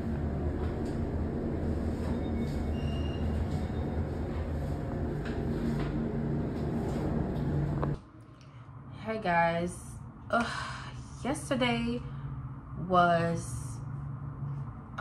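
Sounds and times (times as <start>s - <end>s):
vehicle rumble from inside: 0.0s - 8.0s.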